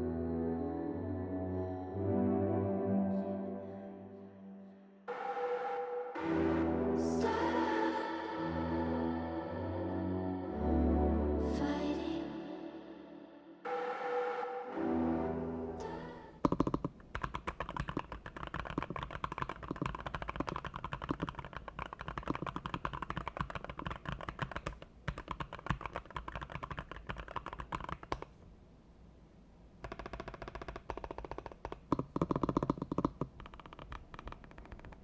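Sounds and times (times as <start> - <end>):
mechanical keyboard typing: 16.4 - 28.3, 29.8 - 35.0.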